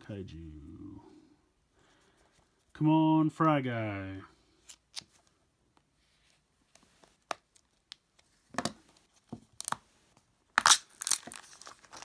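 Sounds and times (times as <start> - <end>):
plastic wrapping crinkling rips: 10.6 - 12.0.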